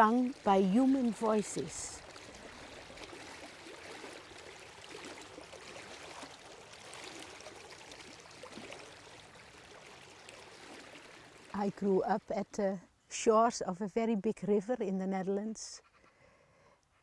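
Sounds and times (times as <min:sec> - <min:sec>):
water flowing with gurgle: 0:00.0 - 0:12.3.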